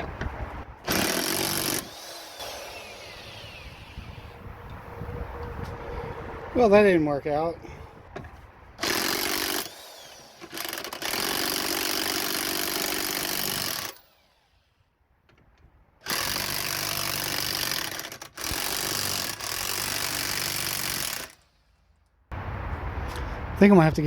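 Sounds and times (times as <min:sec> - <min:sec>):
power tool hammering buzz: 0:00.8 - 0:04.4, 0:08.8 - 0:14.1, 0:16.0 - 0:21.4.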